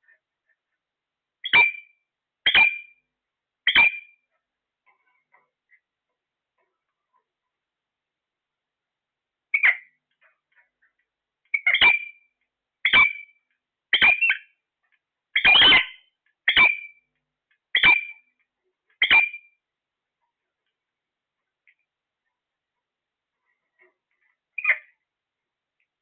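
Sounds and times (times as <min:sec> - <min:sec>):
parrot squawking: 0:01.4 - 0:02.9, 0:03.6 - 0:04.2, 0:09.5 - 0:10.8, 0:11.5 - 0:12.2, 0:12.8 - 0:13.3, 0:13.9 - 0:14.5, 0:15.4 - 0:17.0, 0:17.7 - 0:18.2, 0:19.0 - 0:19.5, 0:23.6 - 0:25.0.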